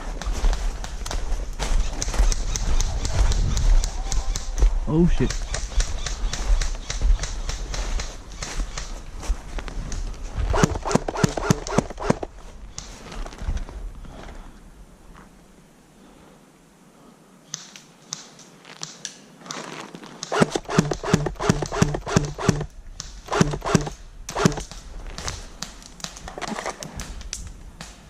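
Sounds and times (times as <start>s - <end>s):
footsteps crunching dry leaves: 0.0s - 4.9s.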